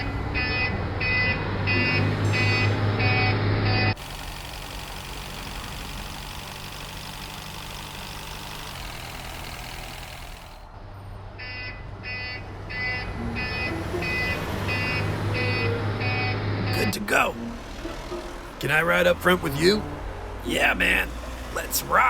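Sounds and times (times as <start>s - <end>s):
reversing alarm beeping: 0.4s - 6.2s, 11.4s - 17.1s.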